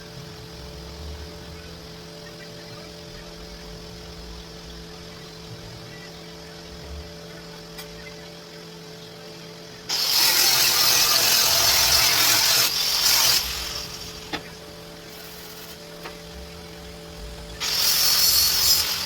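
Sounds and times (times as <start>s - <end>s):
electrical hum: 0.0s - 19.0s
loud rushing hiss: 9.9s - 19.0s.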